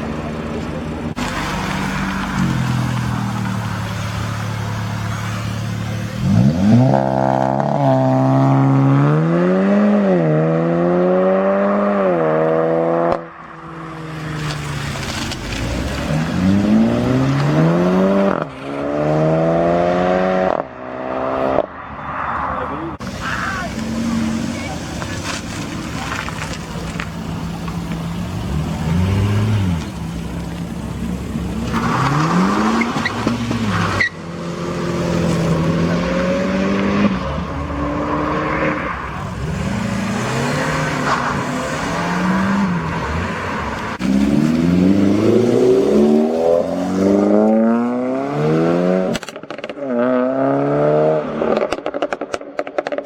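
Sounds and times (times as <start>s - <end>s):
car engines revving: 0.0s - 53.0s
exhaust pops and crackles: 14.4s - 16.3s, 23.6s - 28.2s, 49.1s - 49.9s, 51.5s - 53.0s.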